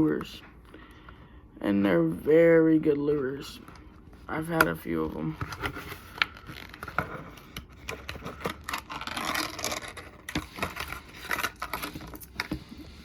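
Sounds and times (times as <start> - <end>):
hands handling plastic packaging: 5.4 - 13.0.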